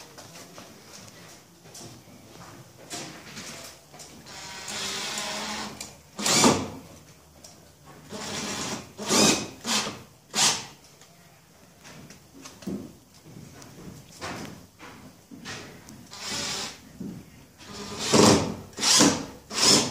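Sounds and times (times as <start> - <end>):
drill driving screws: 4.2 - 6.7, 8.1 - 10.8, 16.1 - 16.8, 17.6 - 19.9.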